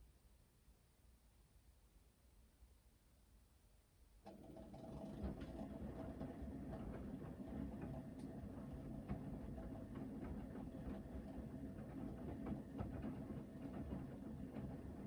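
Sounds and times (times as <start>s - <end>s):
washing machine motor whining: 4.3s - 15.0s.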